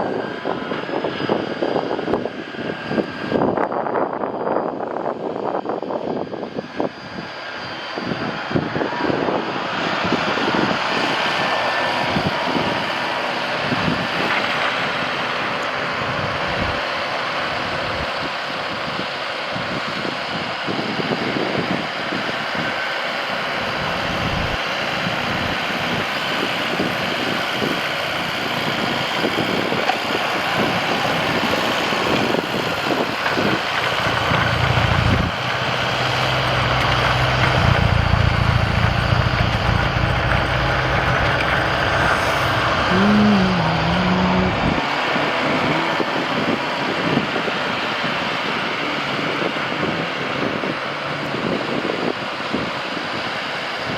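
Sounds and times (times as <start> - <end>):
tractor and snowblower running: 0.0 - 53.9
deep engine hum: 23.4 - 26.0, 28.0 - 52.2.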